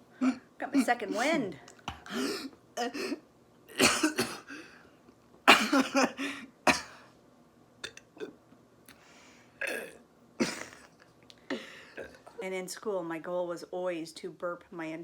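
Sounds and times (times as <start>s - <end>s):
person burping: 7.8s - 8.4s, 9.6s - 10.9s, 11.9s - 12.4s.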